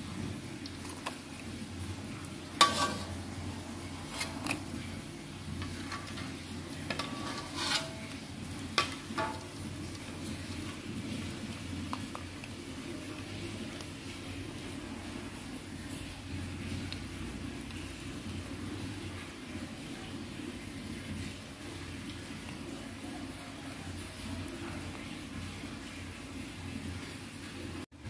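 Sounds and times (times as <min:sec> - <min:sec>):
metal utensil clinking against pan: 0:02.6 - 0:03.2, 0:05.6 - 0:08.2, 0:08.8 - 0:09.6.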